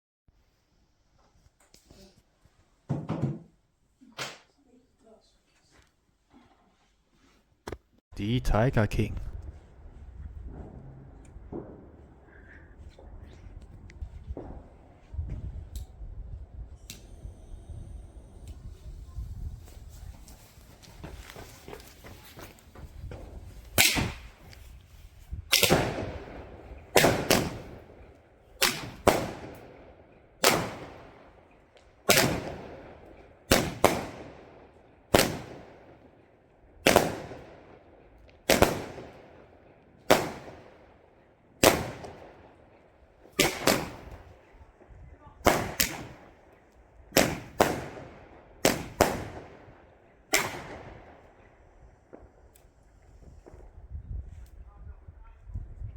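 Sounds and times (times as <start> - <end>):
firework bangs with echo: 25.5 - 28.0, 28.6 - 29.7, 32.1 - 32.9, 33.5 - 34.4, 36.9 - 37.5, 38.5 - 39.2, 40.1 - 40.7, 41.6 - 42.4, 43.4 - 44.2, 47.2 - 49.6.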